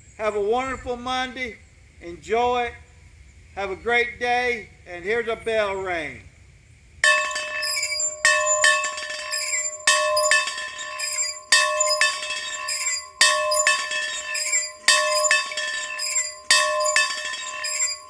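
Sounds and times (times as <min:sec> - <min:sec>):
bell ringing: 0:07.0 - 0:18.0.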